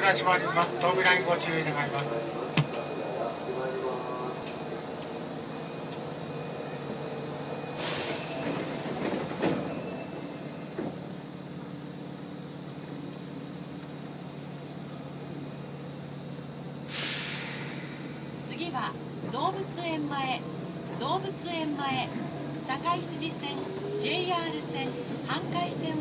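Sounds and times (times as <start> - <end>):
subway train running noise: 0.0 - 26.0
air hiss: 16.9 - 18.2.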